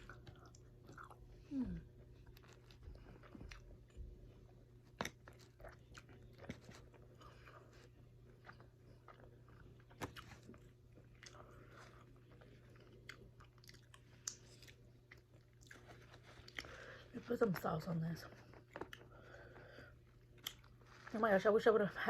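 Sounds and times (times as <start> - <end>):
chewing and biting: 0.0 - 17.1, 18.5 - 21.1
faint low hum: 0.0 - 22.0.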